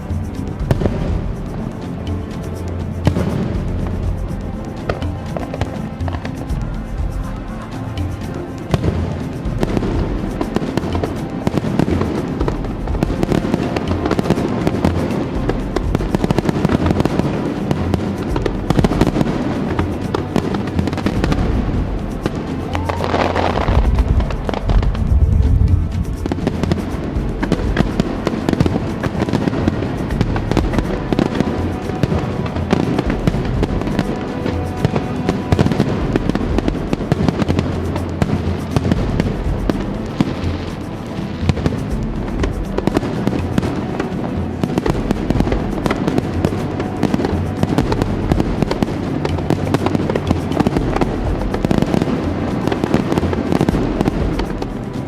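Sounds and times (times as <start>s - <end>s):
fireworks crackling and booming: 0.0s - 55.0s.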